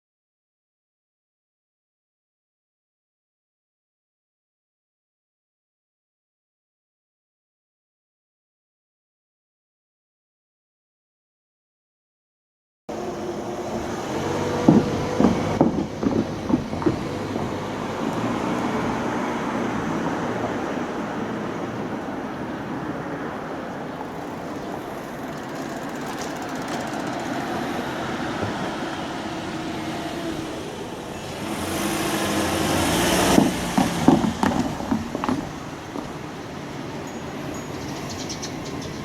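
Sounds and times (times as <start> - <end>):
road traffic: 12.9 - 39.0
vehicle passing: 12.9 - 39.0
tyres clunking over rails: 13.6 - 20.0, 24.0 - 37.6.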